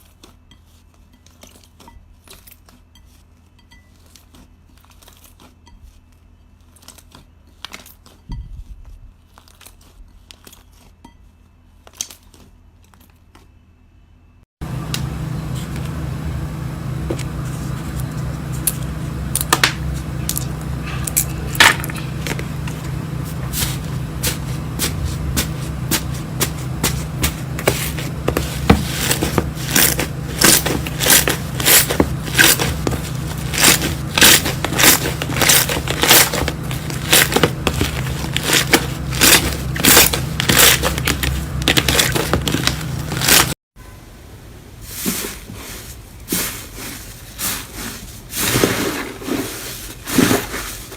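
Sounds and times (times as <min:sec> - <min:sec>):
steady low hum: 0:13.6 - 0:48.3
slime crackling and popping: 0:29.6 - 0:43.5.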